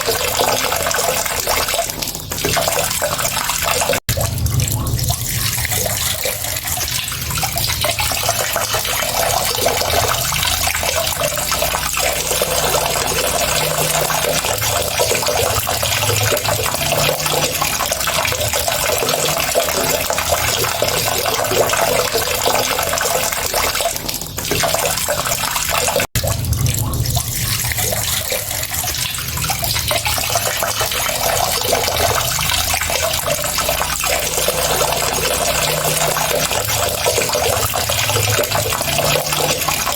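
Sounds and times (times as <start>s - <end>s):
tap running into a sink: 0.0s - 39.9s.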